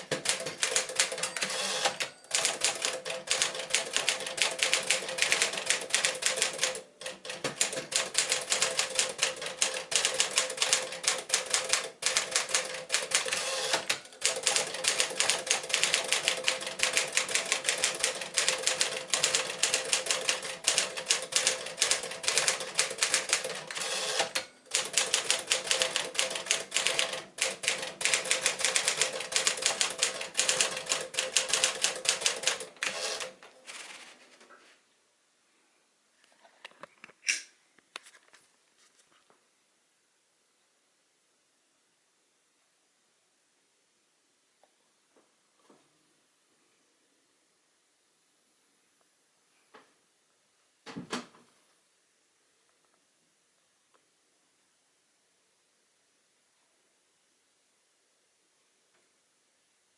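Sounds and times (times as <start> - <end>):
manual typewriter typing: 0.0 - 34.1.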